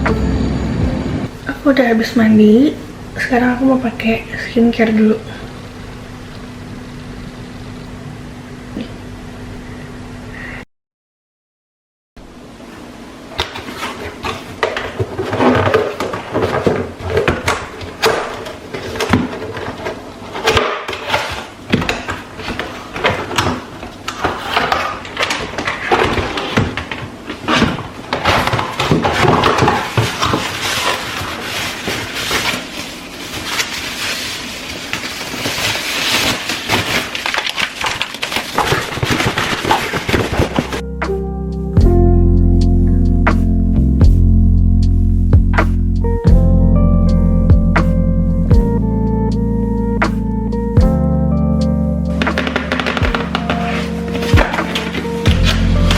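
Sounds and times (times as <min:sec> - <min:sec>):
hard objects clicking and clattering: 0:52.2 - 0:55.9.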